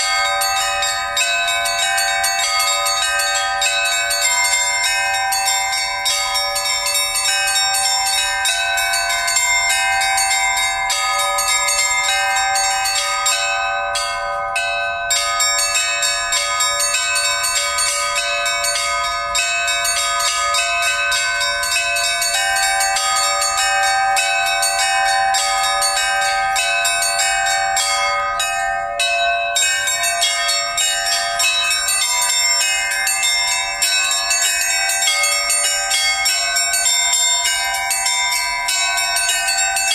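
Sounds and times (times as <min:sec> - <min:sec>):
church bells pealing: 0:00.0 - 0:39.9.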